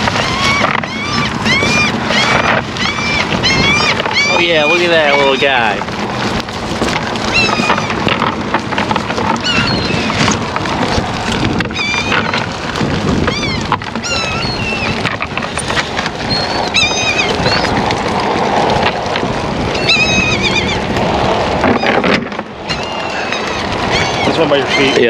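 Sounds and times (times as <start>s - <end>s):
fish flopping and splashing: 0.0s - 25.0s
bird crying: 0.1s - 5.4s, 7.3s - 8.0s, 9.4s - 10.3s, 11.7s - 12.4s, 13.3s - 15.0s, 16.3s - 17.8s, 19.7s - 20.9s, 22.6s - 25.0s.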